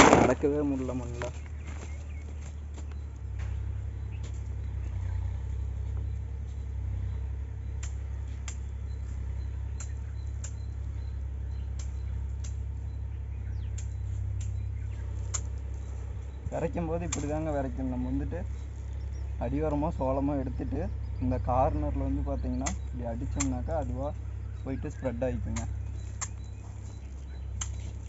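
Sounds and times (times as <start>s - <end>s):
tractor engine drone: 0.0s - 28.0s.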